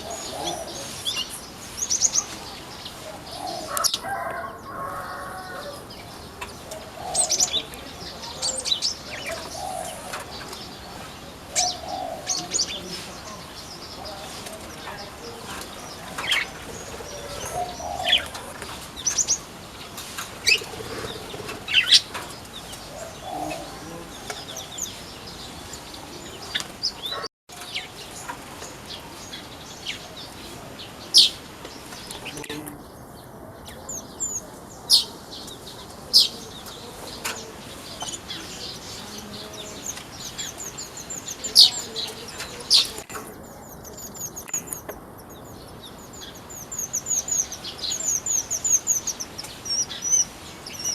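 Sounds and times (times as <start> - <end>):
birds chirping and twittering: 0.0 - 50.9
wings fluttering: 14.2 - 22.9.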